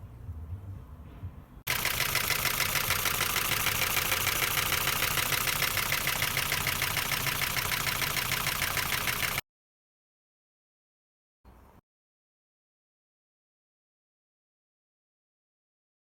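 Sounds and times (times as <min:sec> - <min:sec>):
car engine running with knock: 0:01.7 - 0:09.4.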